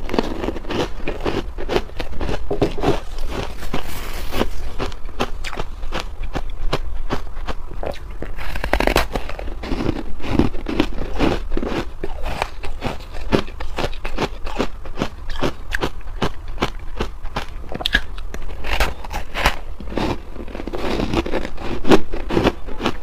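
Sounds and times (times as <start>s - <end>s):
ice being chewed crunching: 0.0s - 23.0s.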